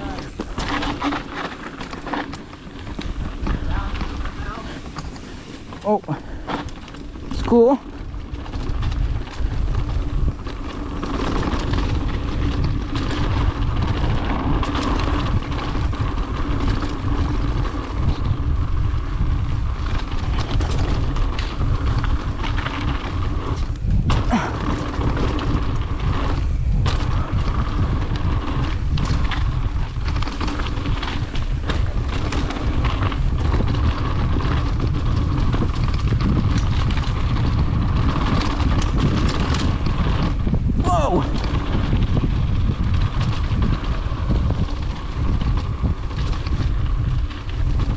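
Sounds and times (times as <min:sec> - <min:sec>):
mountain bike rumbling and rattling: 0:00.0 - 0:47.9
wind buffeting microphone: 0:00.0 - 0:47.9.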